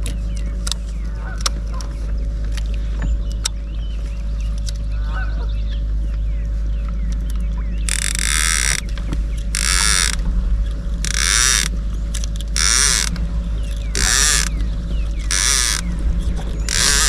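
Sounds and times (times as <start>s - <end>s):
fishing reel clicker ratcheting: 7.9s - 10.2s, 11.0s - 13.2s, 13.8s - 16.0s, 16.6s - 17.0s.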